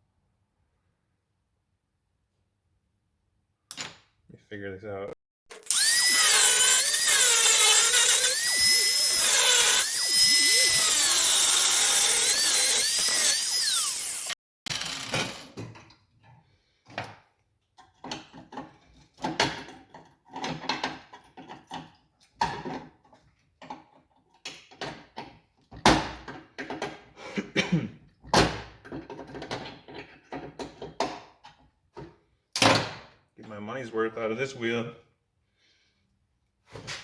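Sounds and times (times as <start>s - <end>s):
tools and parts clunking: 3.7s - 4.2s.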